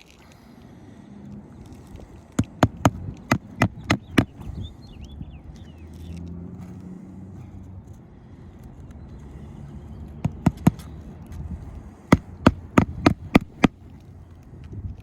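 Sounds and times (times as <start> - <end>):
hammer striking roofing nails: 2.4 - 4.5, 10.2 - 11.0, 12.1 - 13.8.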